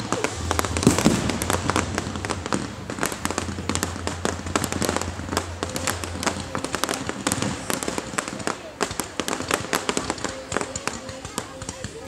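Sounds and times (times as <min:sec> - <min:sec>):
steady low rumble: 0:00.0 - 0:11.4
fireworks crackling pops: 0:00.0 - 0:12.0.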